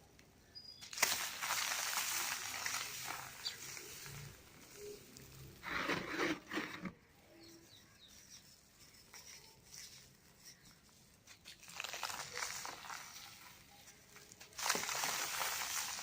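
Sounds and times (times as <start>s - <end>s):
cement crumbling and crunching: 0.8s - 7.0s, 9.5s - 16.0s.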